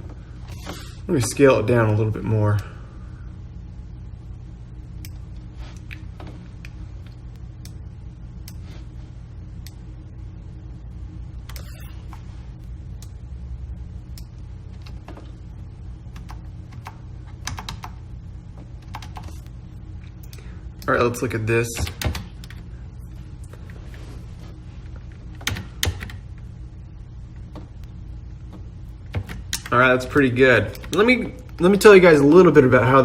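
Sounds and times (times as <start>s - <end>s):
low hum: 0.0s - 33.0s
computer mouse and keyboard clicking: 16.2s - 18.0s, 18.8s - 19.5s.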